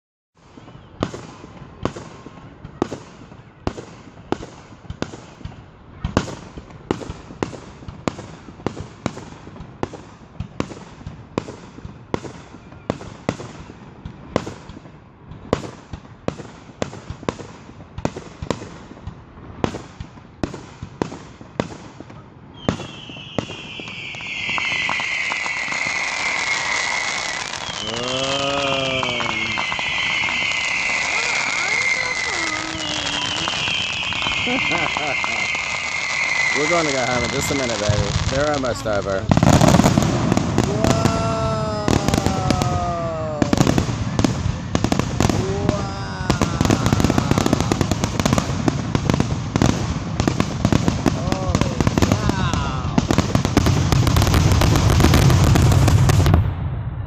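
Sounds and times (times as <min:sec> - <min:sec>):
fireworks bangs: 0:00.4 - 0:57.0
falling firework whistle: 0:22.5 - 0:38.6, 0:39.3 - 0:49.7, 0:50.6 - 0:57.0.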